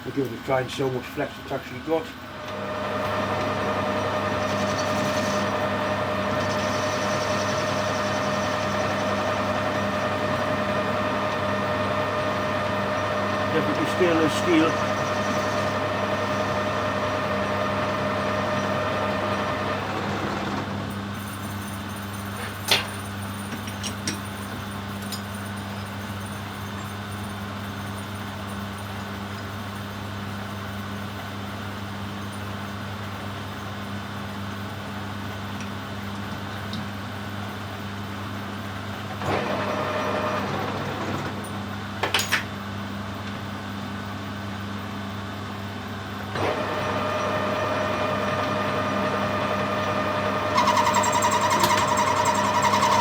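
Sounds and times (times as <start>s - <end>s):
lathe motor hum: 1.9s - 20.9s, 39.2s - 41.9s, 46.2s - 53.0s.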